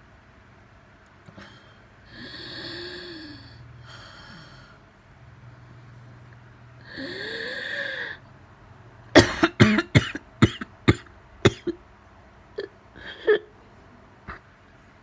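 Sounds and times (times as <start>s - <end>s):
person coughing: 9.2s - 11.8s.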